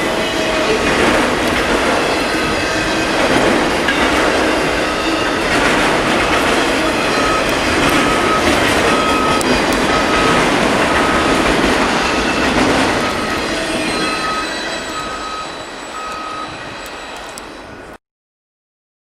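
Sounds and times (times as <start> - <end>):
freight train wheels on rails: 0.0 - 18.0.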